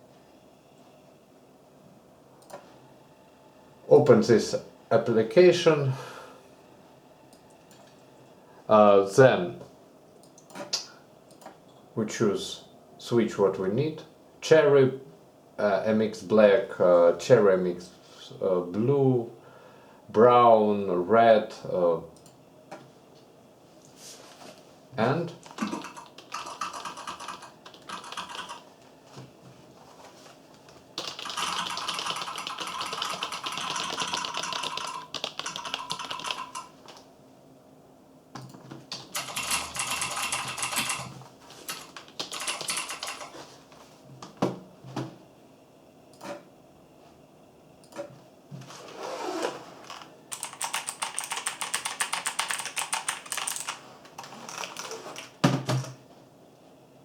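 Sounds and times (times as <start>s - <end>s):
keyboard typing with switch clicks: 25.4s - 28.6s, 31.0s - 37.0s, 50.3s - 53.8s.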